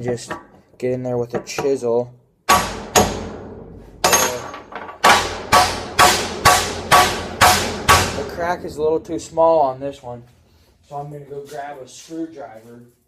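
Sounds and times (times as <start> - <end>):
hammer striking chisel on steel: 2.5 - 3.3, 4.0 - 8.9.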